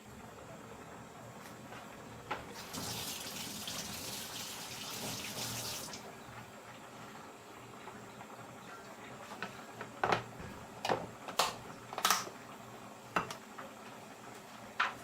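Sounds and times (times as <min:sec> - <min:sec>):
water running from a tap: 0:02.6 - 0:06.1.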